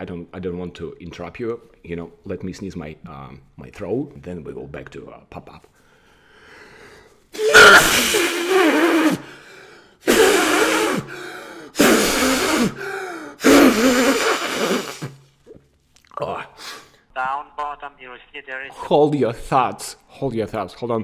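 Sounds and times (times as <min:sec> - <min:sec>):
gasping breaths: 0:05.8 - 0:15.2
man sneezing loudly: 0:07.3 - 0:09.4, 0:10.0 - 0:15.2.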